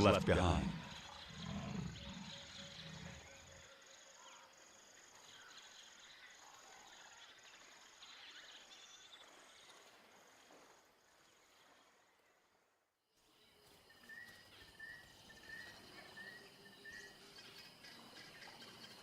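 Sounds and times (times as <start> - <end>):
faint bird chirps: 0.0 - 9.8, 13.2 - 19.0.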